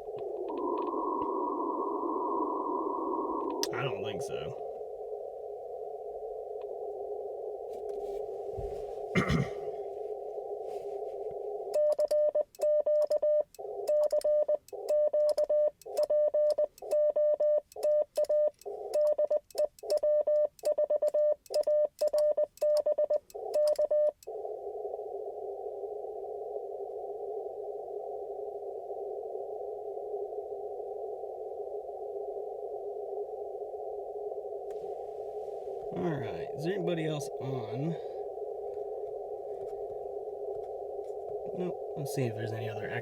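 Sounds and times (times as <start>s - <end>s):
radio receiver hiss: 0.0s - 11.8s, 24.2s - 43.0s.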